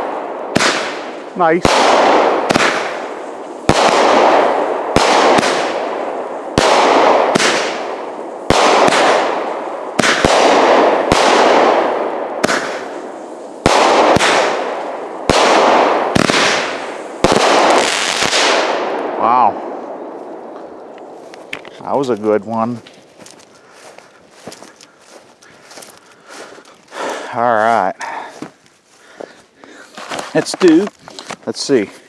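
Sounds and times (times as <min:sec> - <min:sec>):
firework shots launching: 0:00.0 - 0:19.2
crackling firework bursts: 0:00.0 - 0:20.1.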